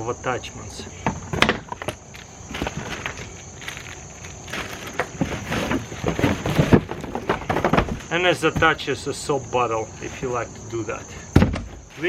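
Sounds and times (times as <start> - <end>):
high insect chirr: 0.0 - 12.0.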